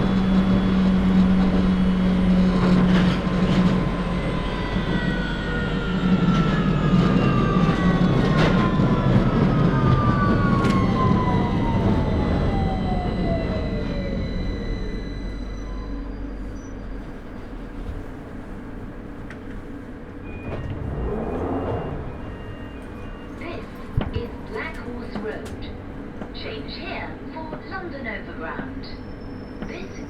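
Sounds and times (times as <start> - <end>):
train traction motors whining: 0.0 - 30.0
wheels rumbling on rail: 0.0 - 30.0.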